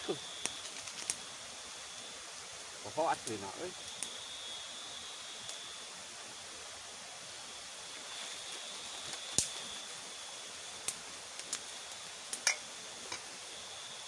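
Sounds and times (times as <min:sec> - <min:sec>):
steady hiss: 0:00.0 - 0:14.0.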